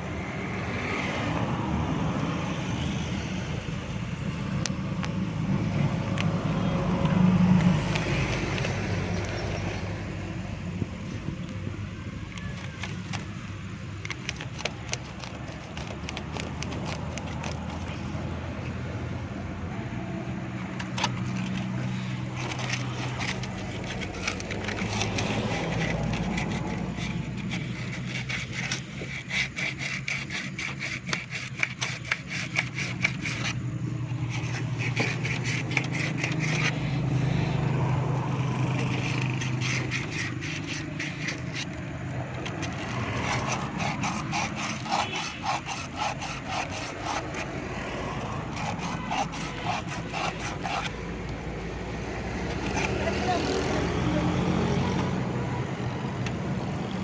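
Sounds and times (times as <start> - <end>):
scraping battery terminal clamp: 5.8 - 10.2, 11.0 - 18.8, 20.7 - 51.5.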